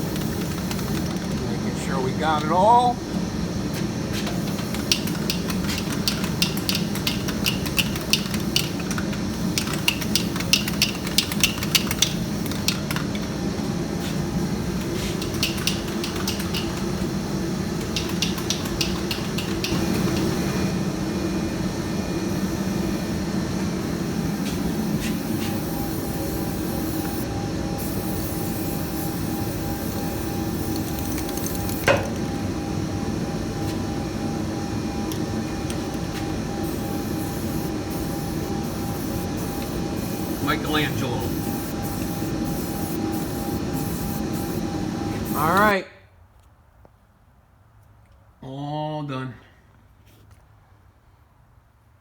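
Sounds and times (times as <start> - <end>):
spray hiss: 0.0 - 1.2, 4.2 - 13.0, 14.0 - 20.5, 23.8 - 32.2, 36.0 - 45.6
spray can ball rattling: 0.0 - 1.4, 4.4 - 13.2, 14.8 - 17.1, 17.8 - 20.4, 27.8 - 32.2
steady low hum: 0.0 - 45.8.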